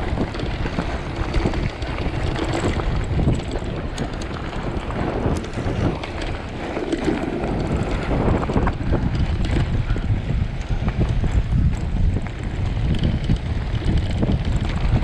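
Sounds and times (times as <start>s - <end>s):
bike rattling over rough ground: 0.0s - 15.0s
wind buffeting microphone: 0.0s - 15.0s.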